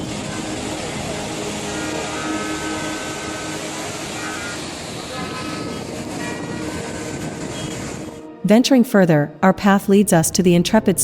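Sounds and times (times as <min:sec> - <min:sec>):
floodwater rushing: 0:00.0 - 0:08.2.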